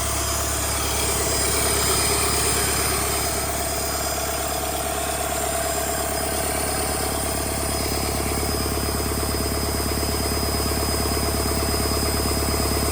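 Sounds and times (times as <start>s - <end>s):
diesel engine running: 0.0s - 12.9s.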